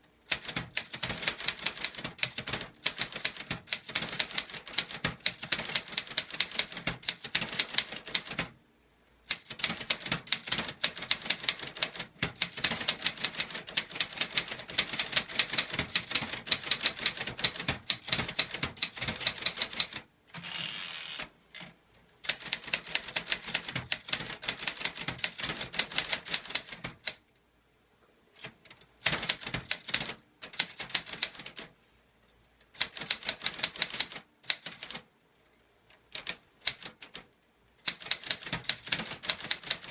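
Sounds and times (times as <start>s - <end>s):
typewriter clacking: 0.3s - 8.5s, 9.3s - 21.3s, 28.4s - 31.7s, 32.8s - 35.0s, 36.1s - 37.2s, 37.8s - 39.9s.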